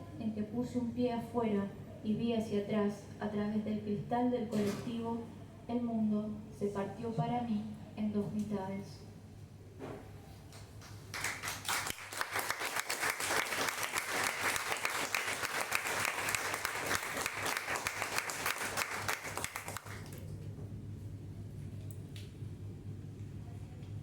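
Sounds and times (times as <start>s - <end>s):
audience applauding: 10.8s - 20.3s.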